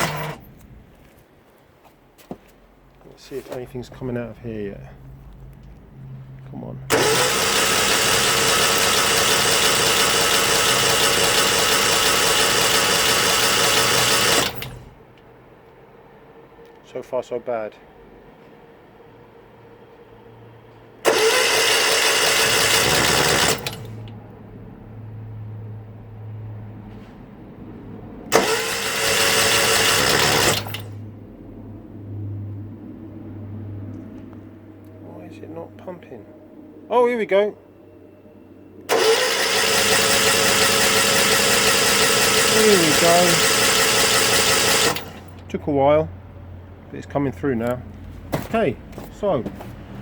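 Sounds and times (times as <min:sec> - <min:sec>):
mechanical whirring: 0:00.0 - 0:00.8, 0:06.9 - 0:15.0, 0:21.0 - 0:24.2
engine humming: 0:00.0 - 0:17.0, 0:17.6 - 0:50.0
motorcycle engine running: 0:40.6 - 0:45.0.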